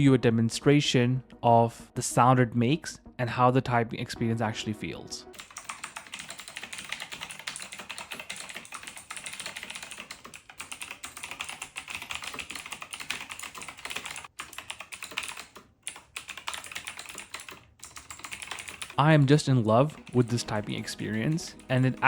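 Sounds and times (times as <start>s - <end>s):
fast mechanical keyboard typing: 5.4s - 22.0s.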